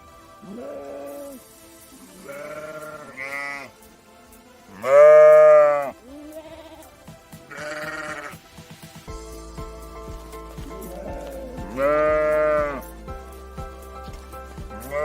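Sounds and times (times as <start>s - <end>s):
wavering bleating calls: 0.4s - 3.8s, 4.7s - 8.4s, 10.7s - 13.0s, 14.8s - 15.0s.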